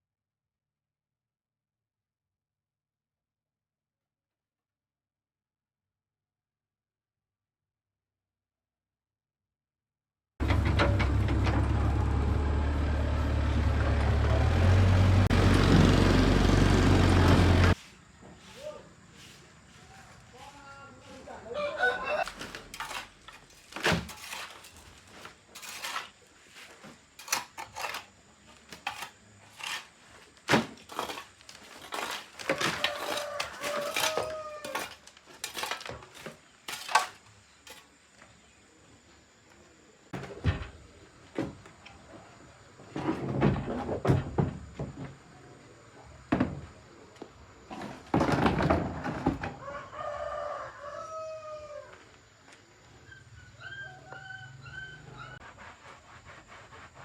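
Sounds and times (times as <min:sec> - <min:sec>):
rooster crowing: 0:21.3 - 0:22.4, 0:32.5 - 0:34.9, 0:49.5 - 0:52.1, 0:53.4 - 0:55.4.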